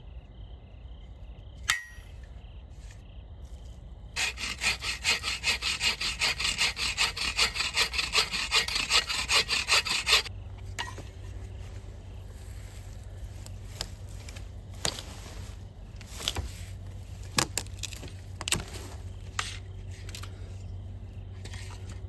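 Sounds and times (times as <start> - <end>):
dry wood cracking and snapping: 17.2 - 18.7.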